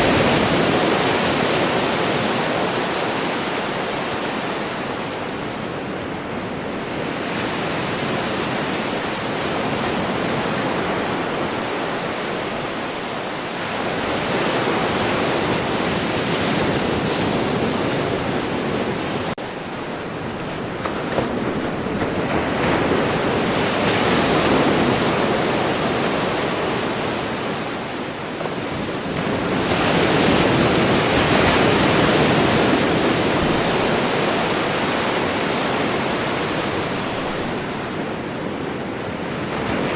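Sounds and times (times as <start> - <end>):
sea waves washing onto shore: 0.0 - 39.9.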